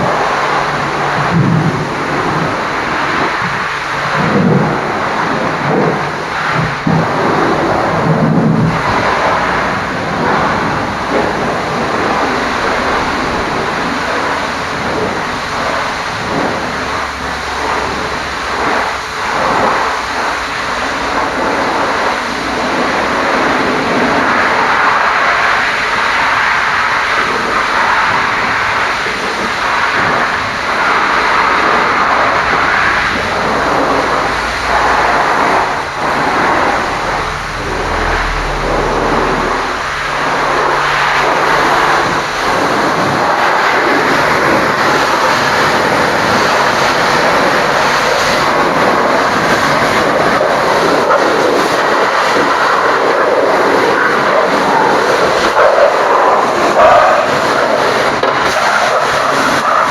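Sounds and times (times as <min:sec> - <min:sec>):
low hum: 0:00.0 - 0:24.0, 0:30.4 - 0:51.4
pressure washer jet hissing: 0:00.0 - 0:59.9.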